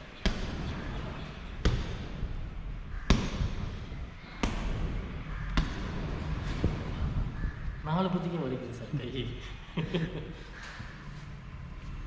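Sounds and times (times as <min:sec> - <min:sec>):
punches thudding on punching bag: 0:00.0 - 0:07.1.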